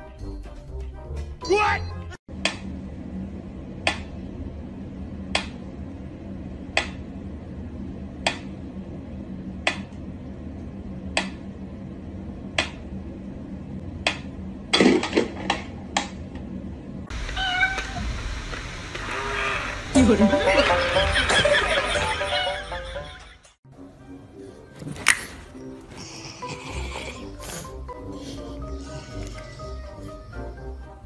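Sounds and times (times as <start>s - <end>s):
cat meowing: 17.2s - 18.1s.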